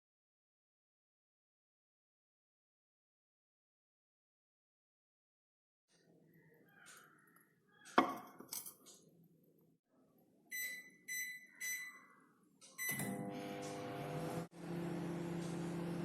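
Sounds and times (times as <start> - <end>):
keypad beeps: 10.5 - 12.0, 12.7 - 13.2
microwave running hum: 12.8 - 16.0.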